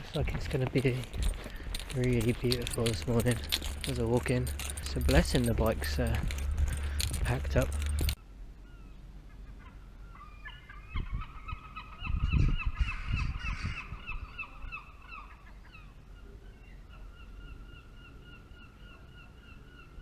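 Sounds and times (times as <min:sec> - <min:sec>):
low rumbling thumps: 0:00.0 - 0:08.2.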